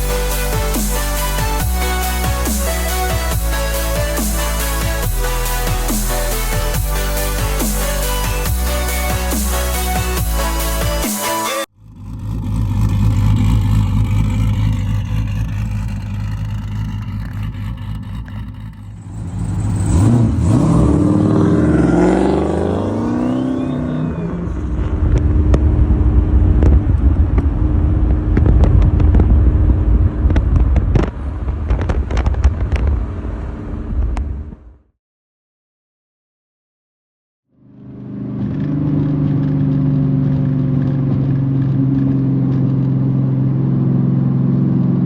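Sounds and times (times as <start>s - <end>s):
car engine idling and revving: 0.0s - 34.8s, 37.6s - 45.0s
exhaust crackles and pops: 11.8s - 19.5s, 24.4s - 34.8s, 38.2s - 45.0s.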